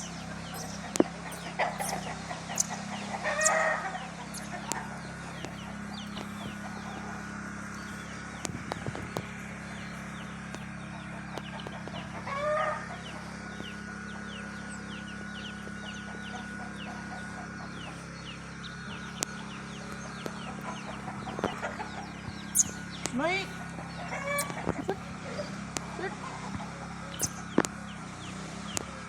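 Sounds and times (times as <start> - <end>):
loud pitched bird call: 0.0 - 8.5, 20.4 - 25.6, 27.2 - 27.6
birds chirping: 0.0 - 29.0
steady low hum: 0.0 - 29.0.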